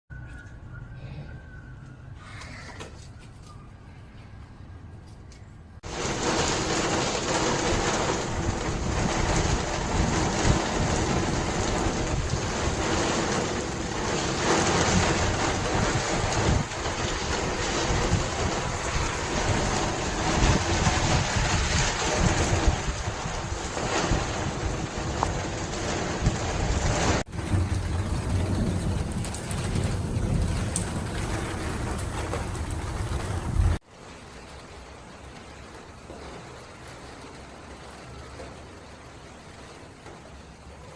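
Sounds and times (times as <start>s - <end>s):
wind rumbling on microphone: 5.8s - 33.8s
heavy rain falling: 5.8s - 40.9s.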